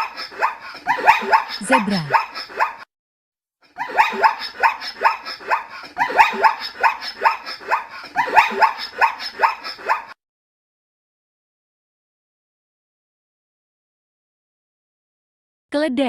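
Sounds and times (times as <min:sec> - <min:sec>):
zebra yelping barks: 0:00.0 - 0:02.8.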